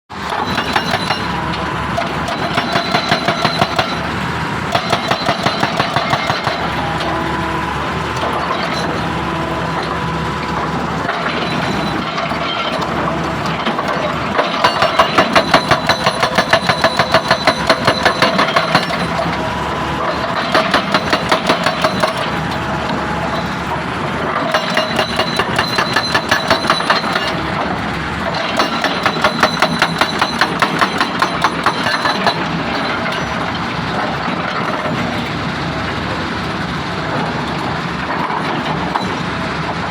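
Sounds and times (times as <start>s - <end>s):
stone-crushing machinery running: 0.1s - 39.9s
rapid hammering on rock: 28.6s - 32.4s.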